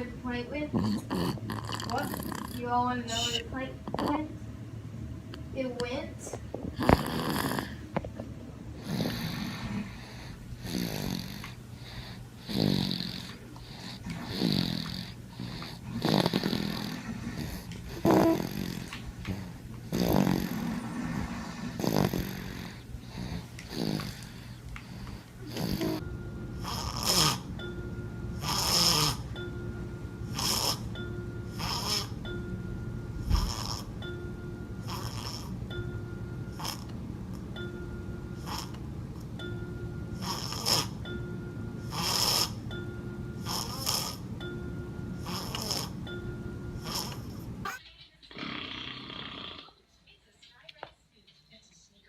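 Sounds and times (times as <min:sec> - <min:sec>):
baby snoring: 0:00.6 - 0:04.3, 0:06.7 - 0:08.0, 0:08.8 - 0:27.6, 0:28.3 - 0:29.4, 0:30.2 - 0:32.3, 0:33.2 - 0:34.1, 0:34.8 - 0:35.6, 0:36.4 - 0:37.5, 0:38.3 - 0:38.8, 0:40.2 - 0:41.2, 0:41.8 - 0:44.3, 0:45.1 - 0:49.8.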